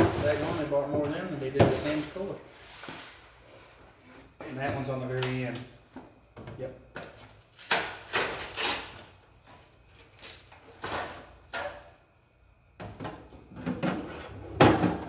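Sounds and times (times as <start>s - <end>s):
trays and products sliding and knocking: 0.0s - 3.7s, 13.5s - 15.0s.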